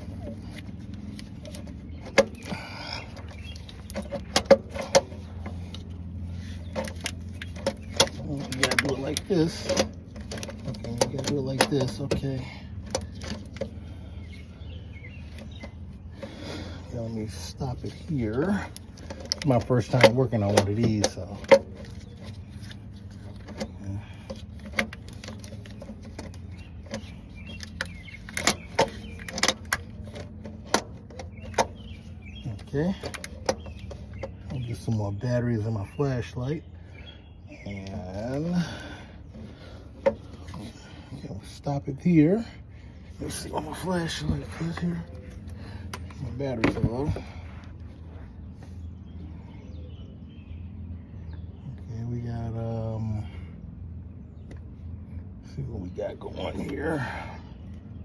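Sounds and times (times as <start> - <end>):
metal tools clinking and scraping: 0.0 - 14.0
steady low hum: 0.0 - 52.0.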